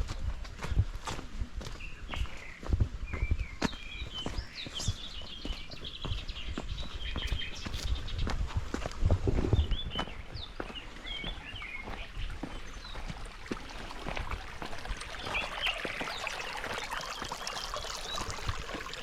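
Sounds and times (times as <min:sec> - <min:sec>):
birds chirping: 0:00.6 - 0:19.0
running water: 0:10.6 - 0:19.0.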